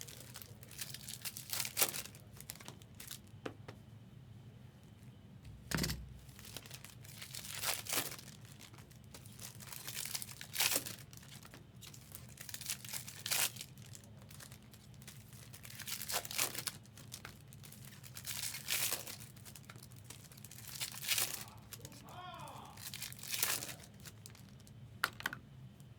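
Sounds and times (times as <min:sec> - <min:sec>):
foil wrappers tearing and crinkling: 0:00.0 - 0:03.3, 0:06.3 - 0:22.2, 0:22.8 - 0:24.8
steady low hum: 0:01.9 - 0:10.4.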